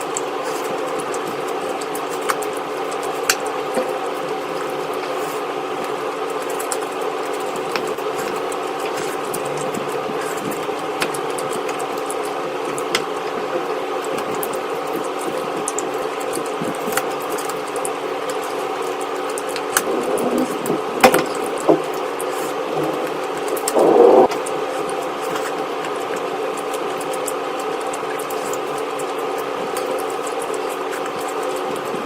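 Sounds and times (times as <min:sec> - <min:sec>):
mechanical hum: 0:00.0 - 0:32.0
rustling noise: 0:19.4 - 0:25.5.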